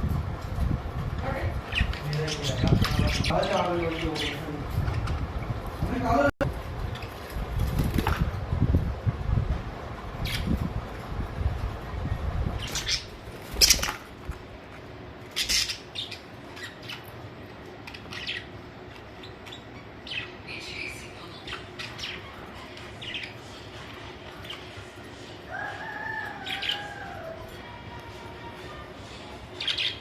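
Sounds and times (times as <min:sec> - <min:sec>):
wing flapping: 0:07.2 - 0:08.5, 0:13.1 - 0:14.4
budgerigars chirping: 0:12.6 - 0:13.9, 0:15.3 - 0:17.2, 0:17.8 - 0:23.6.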